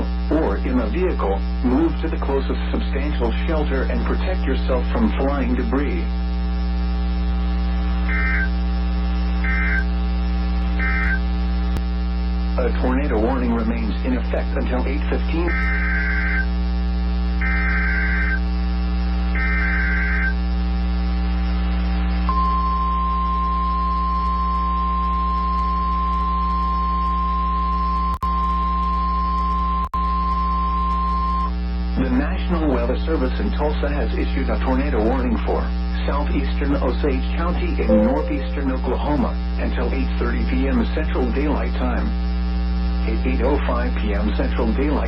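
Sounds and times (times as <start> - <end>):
steady electrical hum: 0.0 - 22.4, 31.6 - 39.6
digital data tone bursts: 8.1 - 8.6, 9.4 - 9.9, 10.8 - 11.2, 37.9 - 38.9
steady alarm tone: 8.1 - 8.6, 9.4 - 9.9, 10.8 - 11.2, 15.5 - 16.5, 17.4 - 18.4, 19.4 - 20.4, 37.9 - 38.9.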